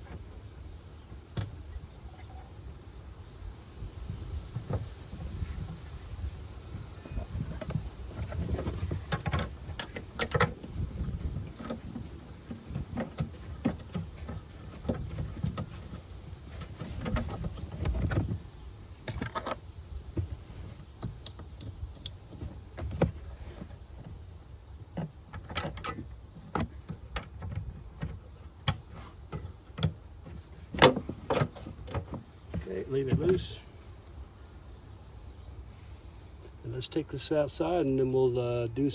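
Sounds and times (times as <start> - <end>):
clicks and rattles of hand work: 4.5 - 33.5.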